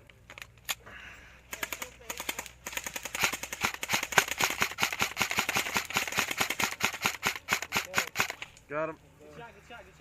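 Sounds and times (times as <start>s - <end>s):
airsoft guns firing bursts: 1.5s - 8.4s.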